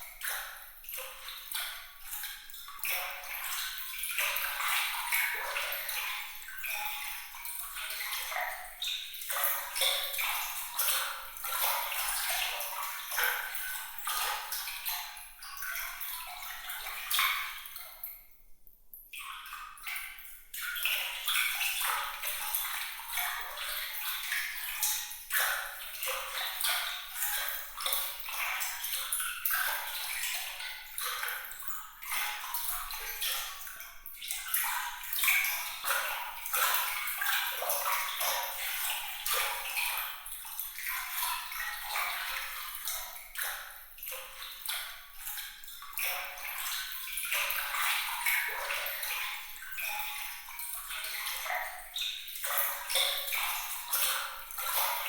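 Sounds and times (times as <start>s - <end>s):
water trickling and splashing: 0.0s - 55.0s.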